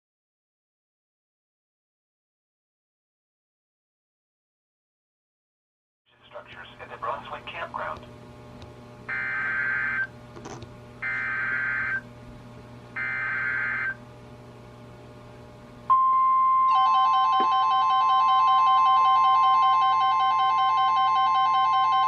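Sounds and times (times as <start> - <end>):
pulsing multi-tone alarm: 9.1 - 10.1, 11.0 - 12.0, 13.0 - 14.0, 15.9 - 22.0
steady single-pitch alert tone: 15.9 - 22.0.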